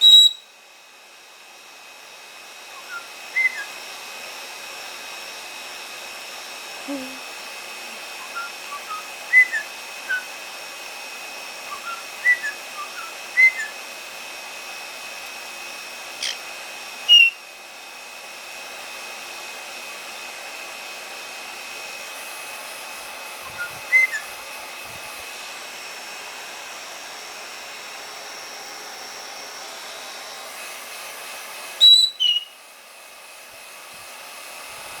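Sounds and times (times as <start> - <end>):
parrots chirping and whistling: 0.0 - 0.5, 2.8 - 3.8, 8.1 - 10.4, 11.7 - 13.8, 16.2 - 16.5, 17.1 - 17.4, 23.5 - 24.4, 31.8 - 32.6
hair dryer whining: 0.0 - 35.0.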